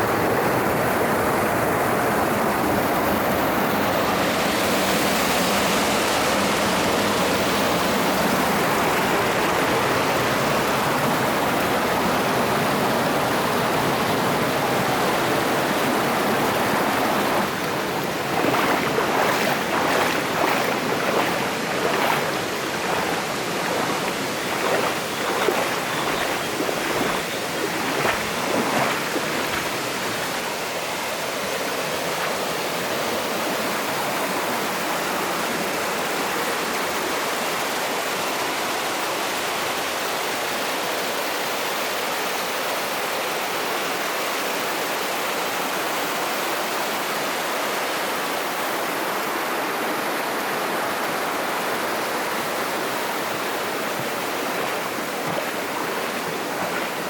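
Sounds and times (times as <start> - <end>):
stream rushing over rocks: 0.0 - 57.0
splashes in shallow water: 3.2 - 34.8, 52.2 - 57.0.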